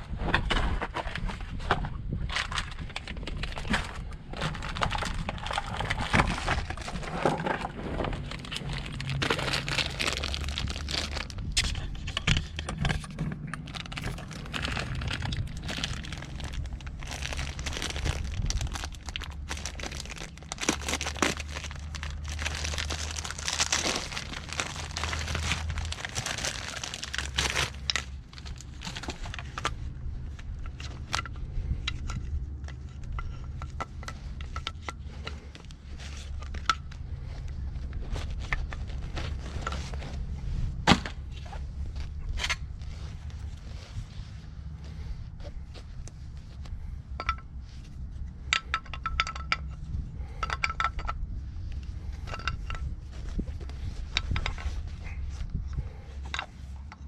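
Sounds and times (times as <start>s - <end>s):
low rumble: 0.0s - 56.9s
clicks and knocks of parts handled: 0.2s - 43.6s, 45.7s - 57.0s
packaging crinkling: 4.4s - 12.0s, 13.5s - 29.9s.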